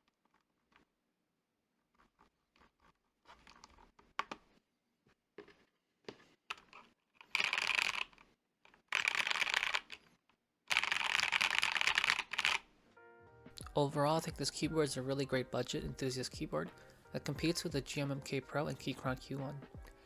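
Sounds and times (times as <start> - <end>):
mechanical keyboard typing: 7.2 - 8.2, 8.9 - 10.1, 10.7 - 12.6.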